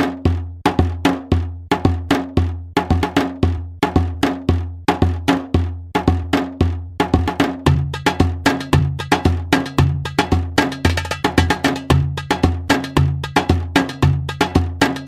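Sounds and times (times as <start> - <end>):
instrumental dancehall music: 7.3 - 15.0.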